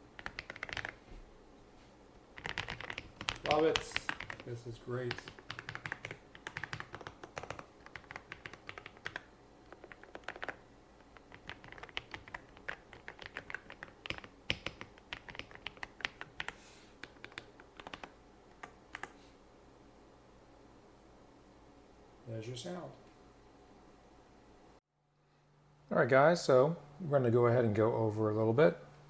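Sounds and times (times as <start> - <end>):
mechanical keyboard typing: 0.2 - 1.0, 2.4 - 19.2.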